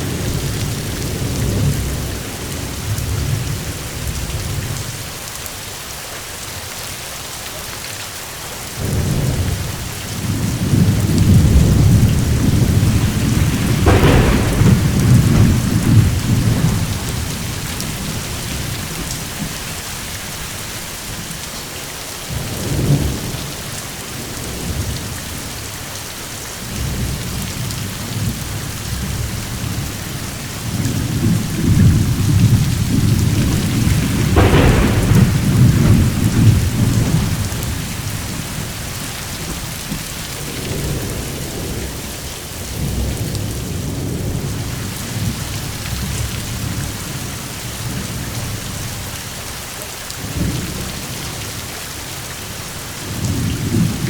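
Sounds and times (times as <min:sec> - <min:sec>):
rain falling: 0:00.0 - 0:54.0
sharp thunder crack: 0:08.8 - 0:21.2, 0:30.6 - 0:41.9
thunder rumbling: 0:08.8 - 0:21.6, 0:26.6 - 0:49.1, 0:52.4 - 0:54.0.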